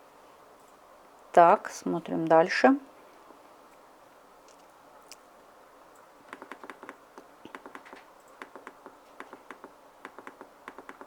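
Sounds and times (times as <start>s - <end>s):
typing on computer keyboard: 6.3s - 11.0s.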